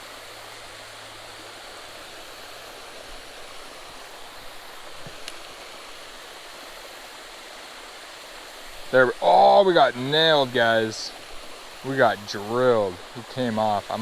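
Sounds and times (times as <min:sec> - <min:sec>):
water pouring over spillway: 0:00.0 - 0:14.0
faint click: 0:05.0 - 0:05.5.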